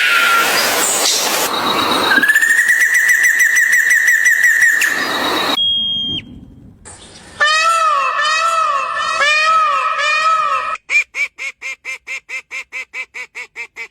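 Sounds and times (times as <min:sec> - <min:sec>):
trilling animal whistle: 0:00.0 - 0:06.3.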